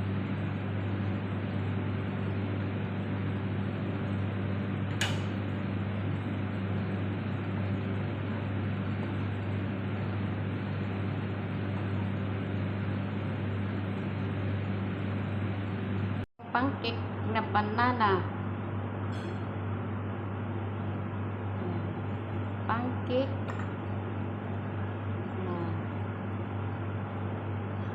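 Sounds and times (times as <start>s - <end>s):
steady mechanical hum: 0.0s - 27.9s.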